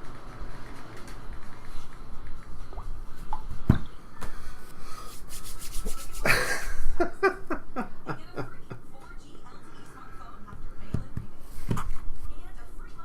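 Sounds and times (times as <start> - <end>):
cards rubbing and scraping: 5.1 - 6.3
quick short strokes: 5.1 - 6.3.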